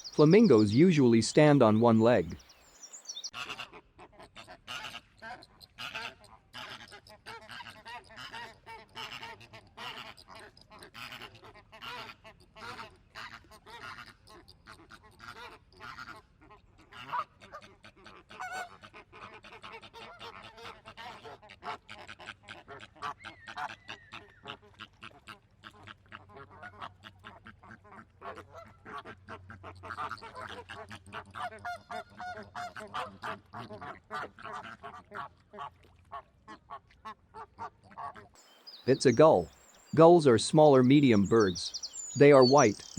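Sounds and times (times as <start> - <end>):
flamingos honking: 0.0 - 2.4, 38.8 - 42.9.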